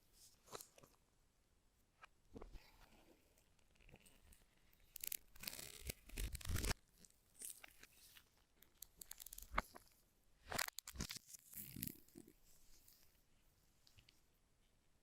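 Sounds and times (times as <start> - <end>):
packaging crinkling: 5.0 - 6.8.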